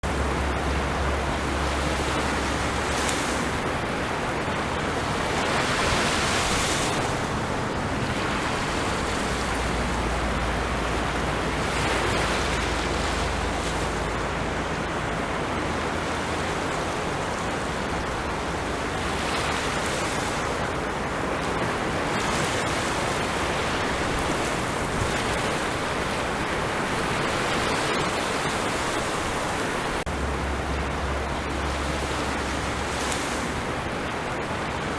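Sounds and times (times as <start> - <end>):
sea waves breaking on beach: 0.0 - 34.9.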